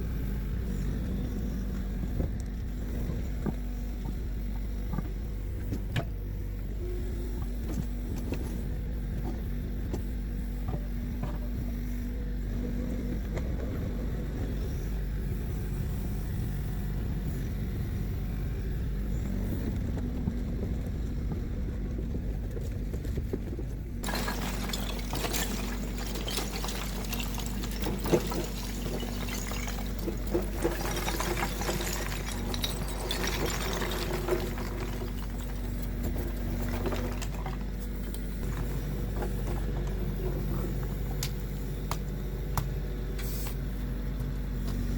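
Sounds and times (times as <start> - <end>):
dense rattling and clattering: 24.0 - 39.8.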